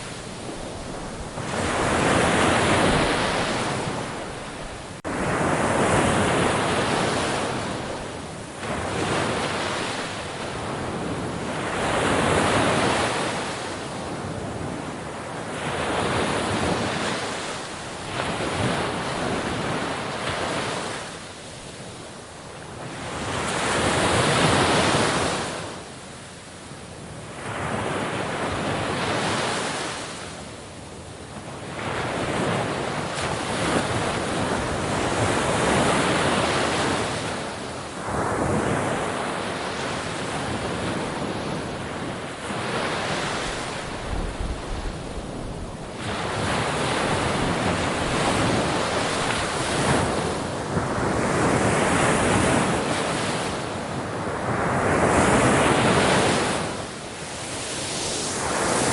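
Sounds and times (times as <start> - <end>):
sea waves breaking on shore: 0.0 - 58.9.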